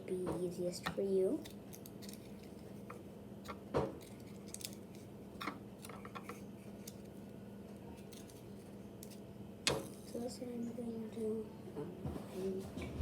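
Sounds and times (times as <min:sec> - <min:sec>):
small crafting pieces clicking: 0:04.0 - 0:04.8.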